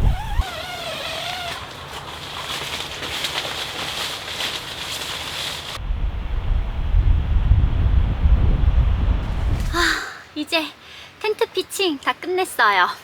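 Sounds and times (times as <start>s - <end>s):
wind buffeting microphone: 0.0s - 0.4s, 5.8s - 10.0s
wind hiss: 3.9s - 11.2s.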